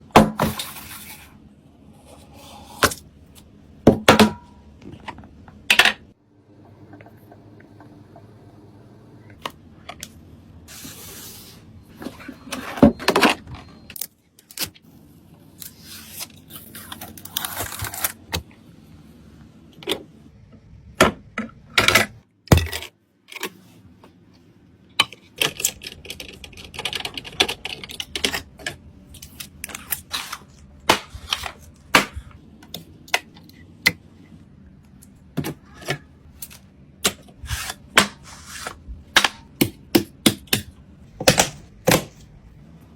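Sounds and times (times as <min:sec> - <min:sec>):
computer parts clicking and clattering: 0:25.0 - 0:30.1.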